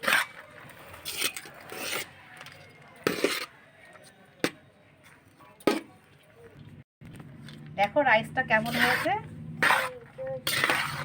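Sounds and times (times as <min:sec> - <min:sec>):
spatula scraping a pan: 0:08.6 - 0:11.0.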